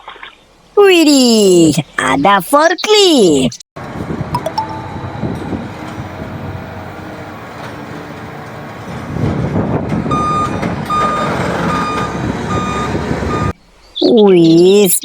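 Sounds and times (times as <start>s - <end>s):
vehicle rumble: 3.8s - 13.6s
reversing alarm beeping: 4.4s - 6.6s, 10.1s - 13.6s.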